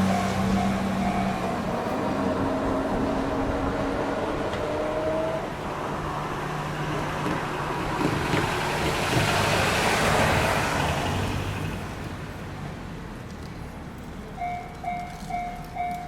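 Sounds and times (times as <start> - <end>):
vehicle passing by: 0.0 - 11.9.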